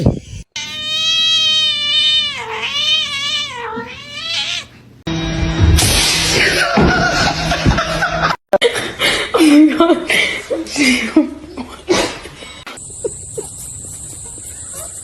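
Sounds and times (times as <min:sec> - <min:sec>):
cat yowling: 0:00.6 - 0:04.7
loud noisy sound: 0:05.1 - 0:08.3.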